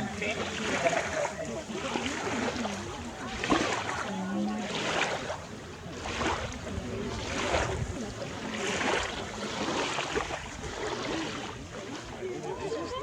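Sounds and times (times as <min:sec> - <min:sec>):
small waves washing in shallows: 0:00.0 - 0:13.0
wind on microphone: 0:05.9 - 0:11.1.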